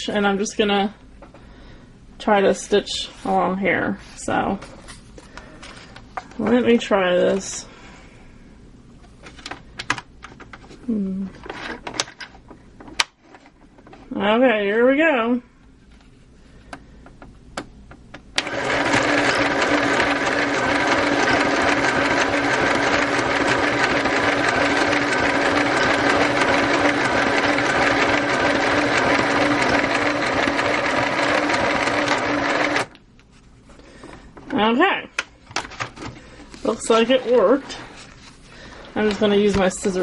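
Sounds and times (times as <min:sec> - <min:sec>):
sewing machine running: 0:18.4 - 0:33.0.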